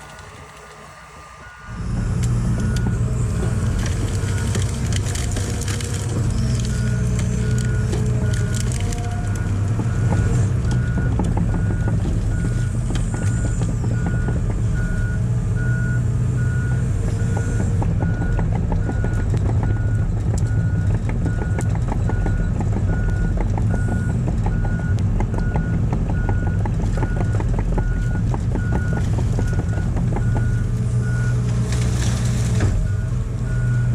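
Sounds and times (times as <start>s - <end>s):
excavator diesel engine running: 0.0s - 33.9s
machine knocks and clanks: 9.6s - 14.9s, 17.2s - 30.8s.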